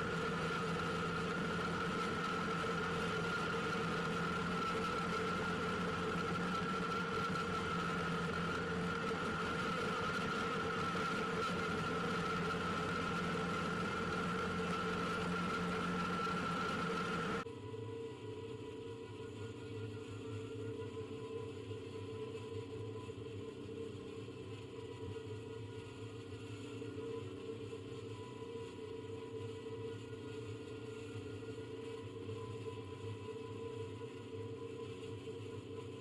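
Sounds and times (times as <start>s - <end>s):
tractor engine droning: 0.0s - 17.4s.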